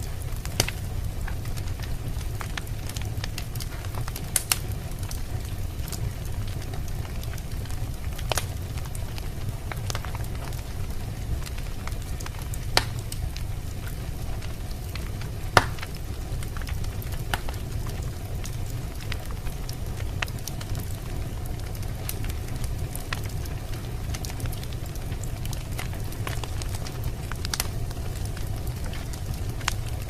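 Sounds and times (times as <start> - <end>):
sharp fire pops: 0.0 - 30.0
wood fire crackling: 0.0 - 30.0.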